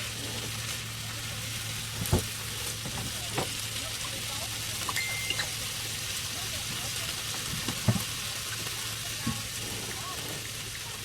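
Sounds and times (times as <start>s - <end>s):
vegetables sizzling in a skillet: 0.0s - 11.0s
short high tone: 5.0s - 5.6s.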